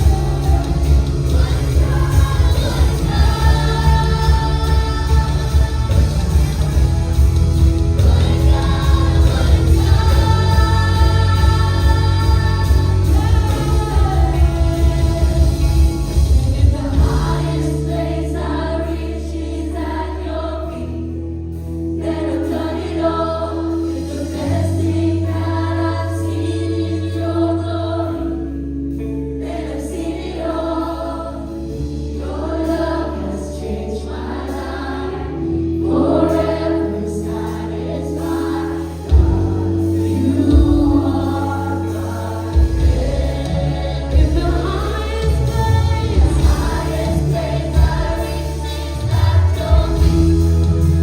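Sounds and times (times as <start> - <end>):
bass and keyboard chords: 0.0 - 51.0
group of voices singing: 0.0 - 51.0.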